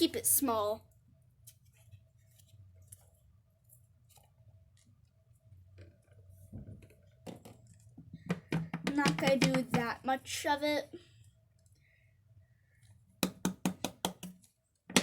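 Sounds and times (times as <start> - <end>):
knocks: 6.6 - 9.9.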